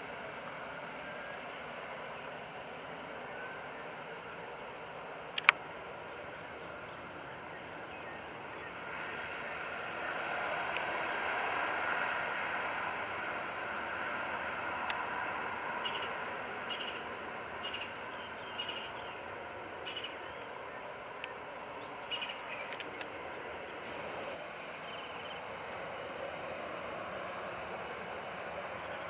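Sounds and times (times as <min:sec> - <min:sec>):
jet aircraft engine: 0:00.0 - 0:29.0
high bird chirps: 0:15.8 - 0:20.5, 0:21.8 - 0:23.1.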